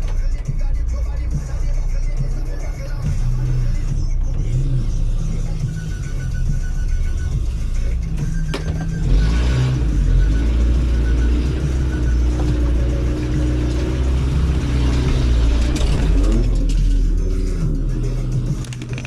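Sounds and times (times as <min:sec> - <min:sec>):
heavy bass line: 0:00.0 - 0:19.0.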